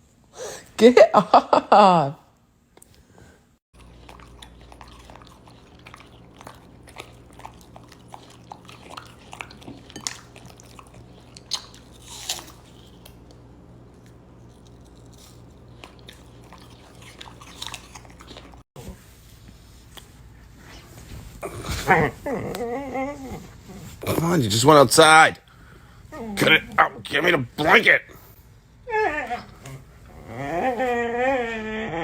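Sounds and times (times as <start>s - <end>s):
low electrical hum: 0.0s - 32.0s
pet chewing: 3.8s - 18.6s.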